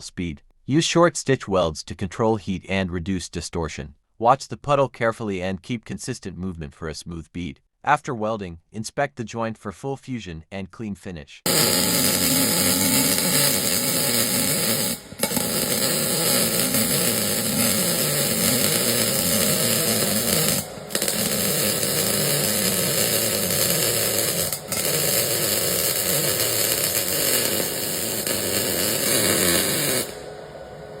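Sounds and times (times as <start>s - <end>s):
welding arc crackling buzz: 11.5s - 31.0s.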